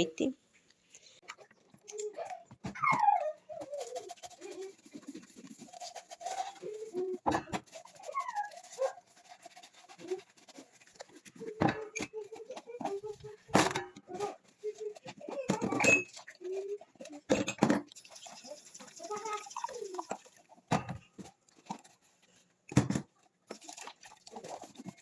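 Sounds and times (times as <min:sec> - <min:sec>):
dog whining: 0:02.1 - 0:04.6.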